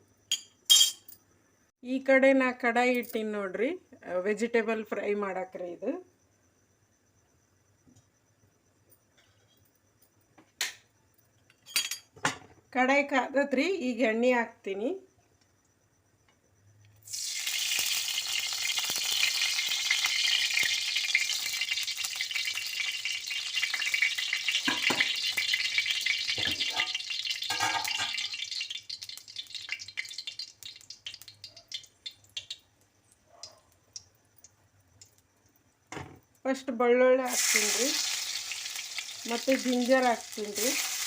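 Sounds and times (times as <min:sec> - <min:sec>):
oil sizzling in hot pan: 0:17.0 - 0:32.7, 0:37.3 - 0:41.0.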